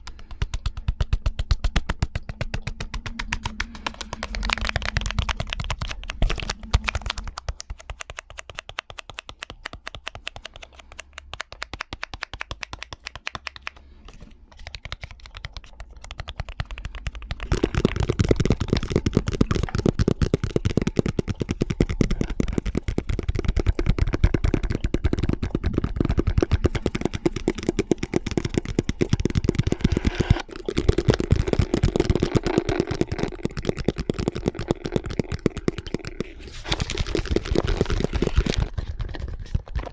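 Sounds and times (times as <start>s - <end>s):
rapid layered tapping: 0.0s - 13.9s, 14.5s - 39.9s.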